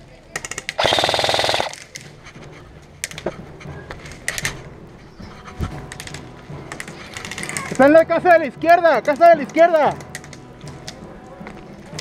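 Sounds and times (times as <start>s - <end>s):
sharp clicks and cracks: 0.3s - 2.2s, 3.0s - 3.4s, 5.9s - 7.8s, 8.7s - 11.0s
airsoft gun full-auto burst: 0.8s - 1.8s.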